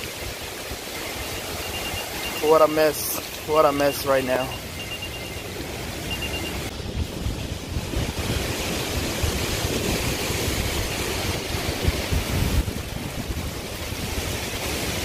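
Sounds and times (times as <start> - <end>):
strong wind buffeting microphone: 5.5 - 15.0.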